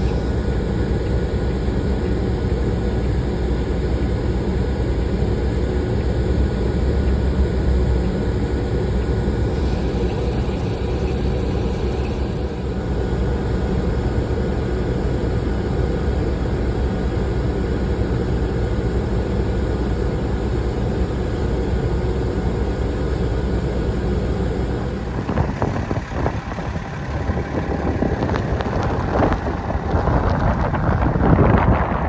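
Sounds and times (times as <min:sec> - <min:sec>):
wind buffeting microphone: 0:24.9 - 0:32.0.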